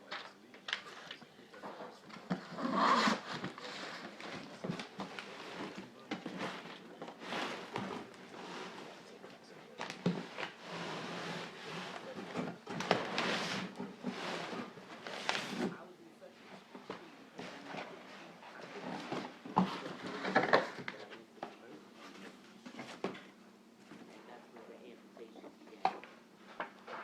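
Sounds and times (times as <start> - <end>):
packaging rustling: 1.8 - 15.7.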